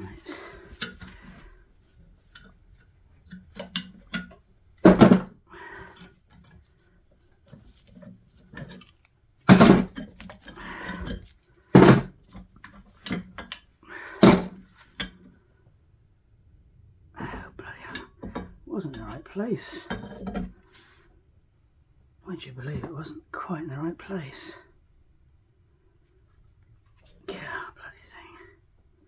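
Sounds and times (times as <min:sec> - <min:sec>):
metal tools clinking and clattering: 0:08.5 - 0:12.1, 0:14.2 - 0:14.6.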